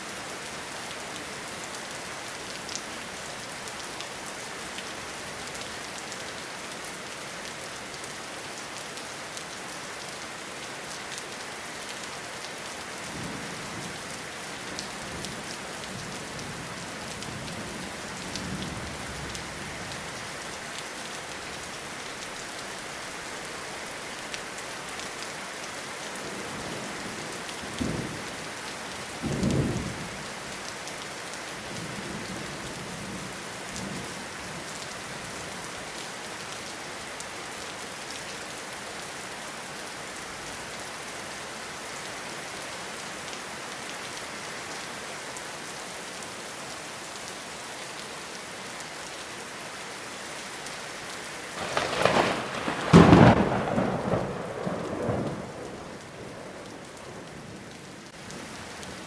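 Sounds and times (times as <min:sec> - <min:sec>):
steady rain in forest: 0:00.0 - 0:59.0
thunder clap: 0:51.6 - 0:55.8
distant thunder rumbles: 0:51.6 - 0:57.6.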